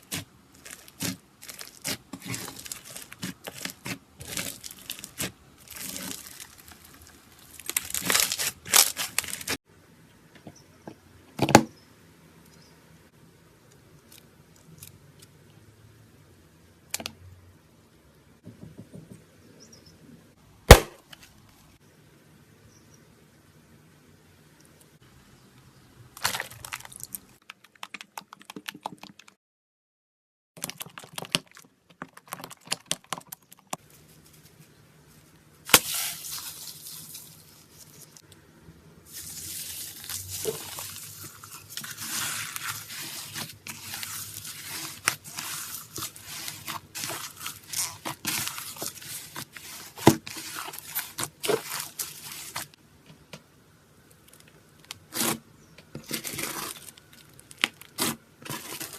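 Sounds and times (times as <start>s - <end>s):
slime crackling and popping: 0.0s - 9.6s, 39.1s - 52.7s, 56.0s - 58.9s
sharp crack: 20.7s - 21.2s.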